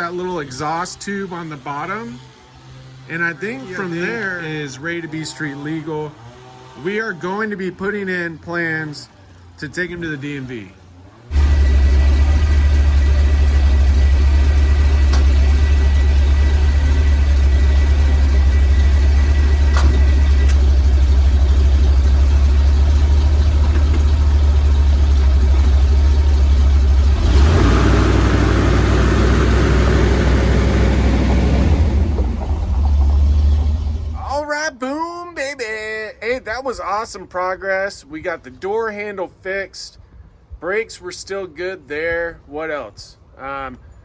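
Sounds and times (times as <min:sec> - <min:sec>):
truck engine rumbling: 0:00.0 - 0:34.6.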